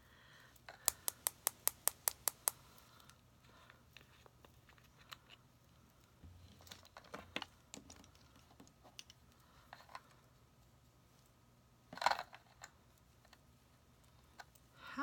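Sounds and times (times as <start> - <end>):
small container clicks and taps: 0.7 - 2.6.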